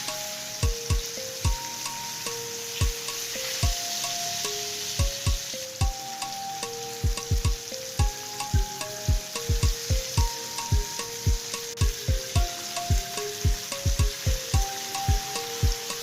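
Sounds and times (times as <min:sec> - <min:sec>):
fish sizzling in oil: 0:00.0 - 0:16.0
held melody: 0:00.0 - 0:16.0
ticking hi-hats: 0:00.0 - 0:16.0
deep booming kick drums: 0:07.1 - 0:15.8.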